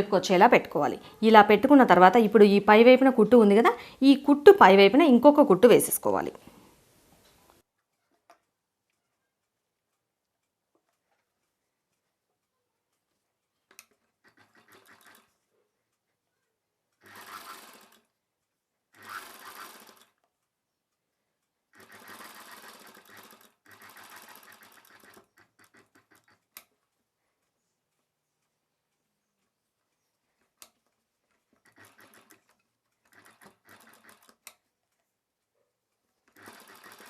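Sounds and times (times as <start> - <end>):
sewing machine stitching: 13.8 - 15.5, 16.9 - 18.2, 18.9 - 20.2, 21.7 - 26.7, 31.3 - 34.6, 36.2 - 37.0.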